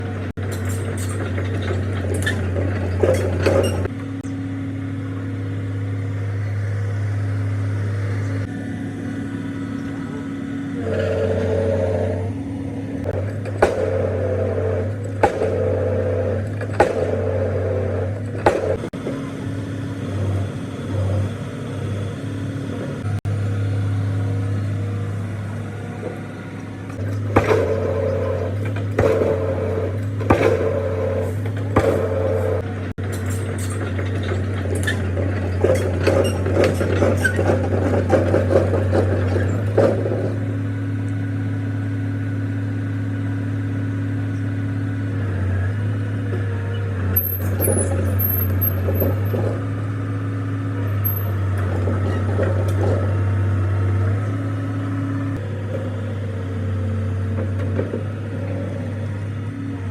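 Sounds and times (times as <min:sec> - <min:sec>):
excavator diesel engine running: 0:00.0 - 0:59.9
hydraulic hammer impacts: 0:13.0 - 0:19.1, 0:26.9 - 0:40.6.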